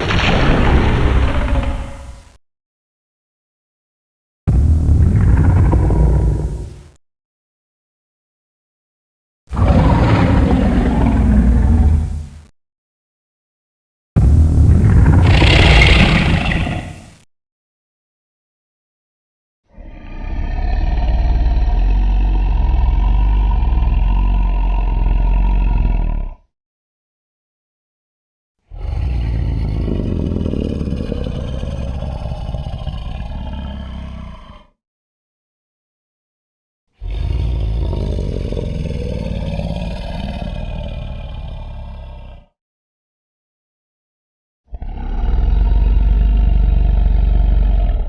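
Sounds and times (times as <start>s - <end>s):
monster roaring: 4.5s - 6.8s, 9.5s - 12.3s, 14.2s - 17.2s, 19.7s - 26.4s, 28.7s - 34.8s, 37.0s - 42.6s, 44.7s - 48.0s.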